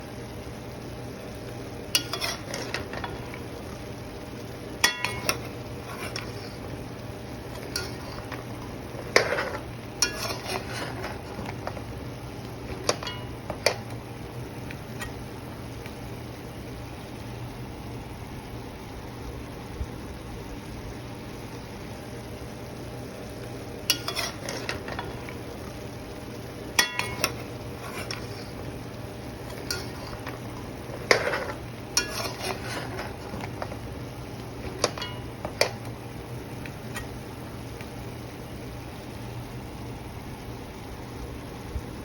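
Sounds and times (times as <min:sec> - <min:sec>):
steady hiss: 0:00.0 - 0:42.0
metal spoon clinking in pot: 0:01.9 - 0:03.4, 0:04.8 - 0:06.5, 0:07.5 - 0:11.8, 0:12.7 - 0:14.0, 0:23.9 - 0:25.4, 0:26.7 - 0:28.6, 0:29.4 - 0:33.8, 0:34.6 - 0:35.9.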